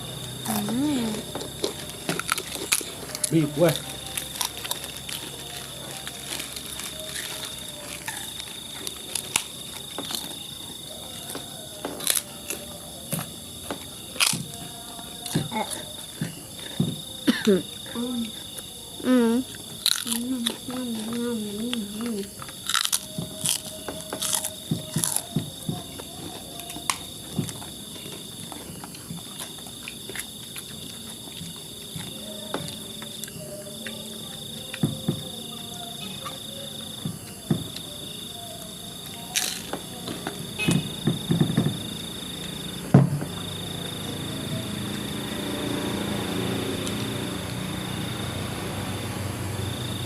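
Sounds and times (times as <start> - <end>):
crickets trilling: 0.0 - 50.0
chewing: 0.4 - 17.3, 18.3 - 40.7.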